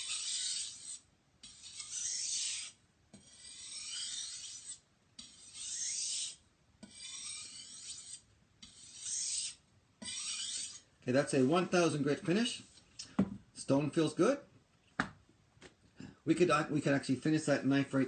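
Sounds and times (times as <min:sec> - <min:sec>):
knife sharpening on water stone: 0:00.0 - 0:10.9.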